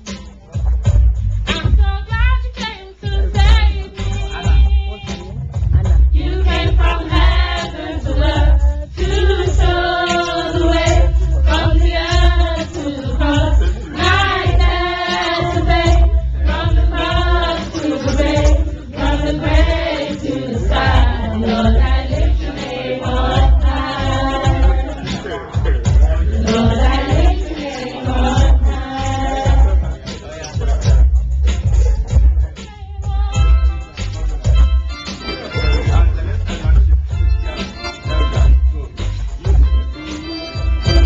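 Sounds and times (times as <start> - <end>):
children's choir singing: 6.2 - 30.0.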